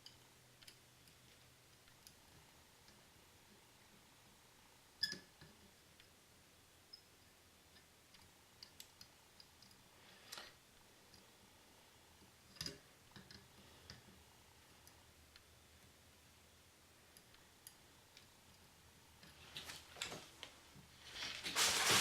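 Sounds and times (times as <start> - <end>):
faint clicks and small knocks: 0.0 - 4.0, 7.7 - 11.3, 12.2 - 16.0, 17.1 - 21.5.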